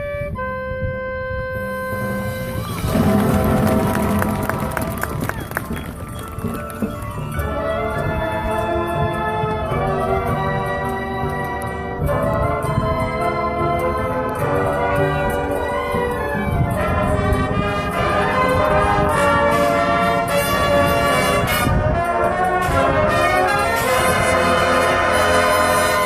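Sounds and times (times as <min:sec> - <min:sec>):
brass sustained chords: 0:00.4 - 0:06.0, 0:16.6 - 0:26.0
percussion hits: 0:02.6 - 0:07.9.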